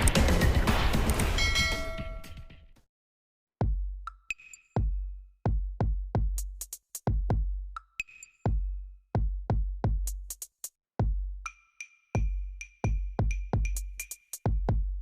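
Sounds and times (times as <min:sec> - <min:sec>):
ringing bell-like tone: 0:01.4 - 0:02.4.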